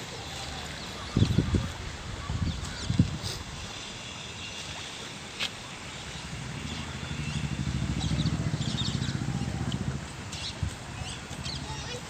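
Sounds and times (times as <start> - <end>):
small birds chirping: 4.0 - 12.0
vehicle engine throbbing: 6.1 - 10.4.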